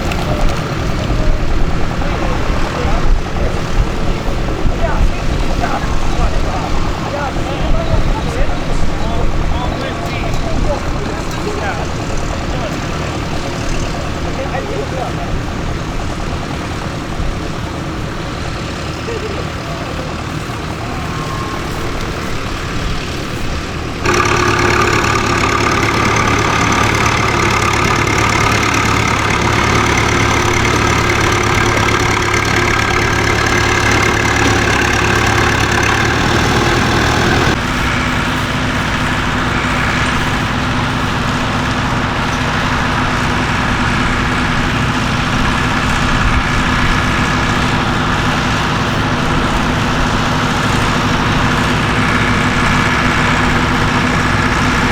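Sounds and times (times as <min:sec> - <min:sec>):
tractor engines running: 0:00.0 - 0:54.9.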